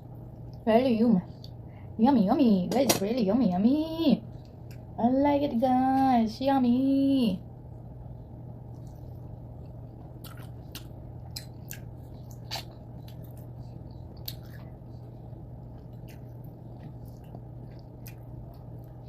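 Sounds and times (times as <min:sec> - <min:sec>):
steady low hum: 0:00.0 - 0:19.0
chewing with wet smacks: 0:08.6 - 0:19.0.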